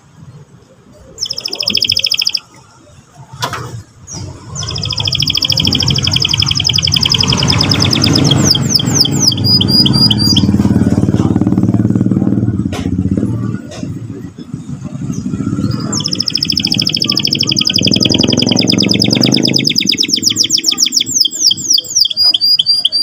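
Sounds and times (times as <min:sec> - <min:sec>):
low engine rumble: 0:00.0 - 0:22.0
canary singing trills: 0:01.1 - 0:02.6, 0:04.0 - 0:10.9, 0:14.6 - 0:23.0.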